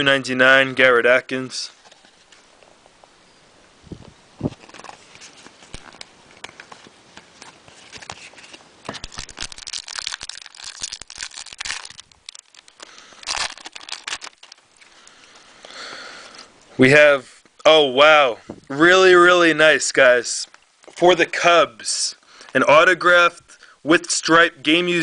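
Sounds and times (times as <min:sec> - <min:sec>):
cards being handled: 0:04.4 - 0:12.0
wrapper tearing and crinkling: 0:04.5 - 0:14.9.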